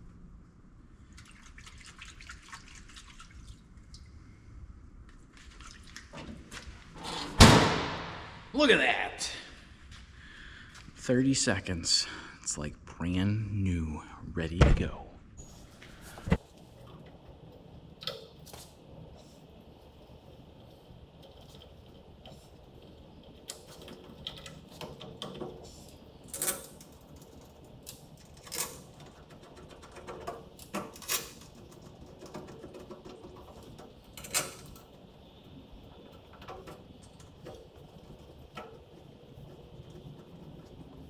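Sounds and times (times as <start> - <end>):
metal parts and tools clanking: 26.2 - 35.0.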